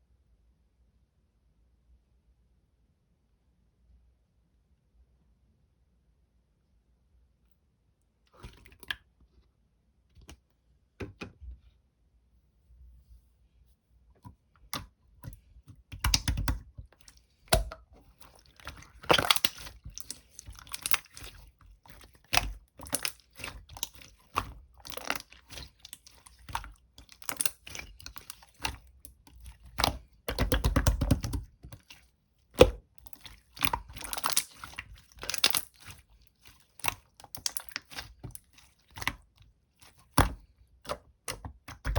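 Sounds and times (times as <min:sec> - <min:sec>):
slime clicking and crackling: 0:15.2 - 0:41.9.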